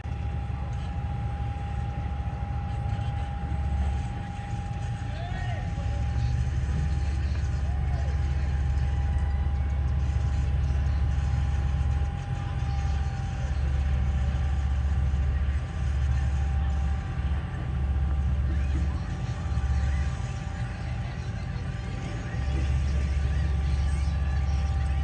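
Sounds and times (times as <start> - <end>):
heavy truck engine running: 0.0 - 25.0.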